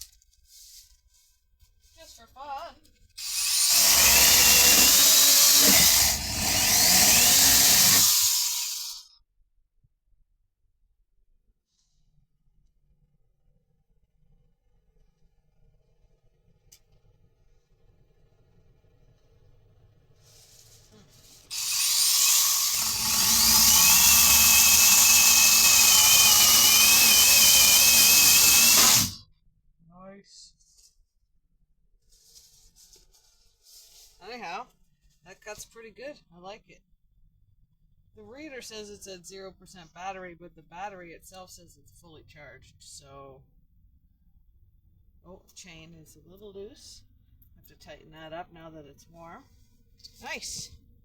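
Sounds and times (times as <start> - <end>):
electric chainsaw running: 3.2 - 9.0, 21.5 - 29.2.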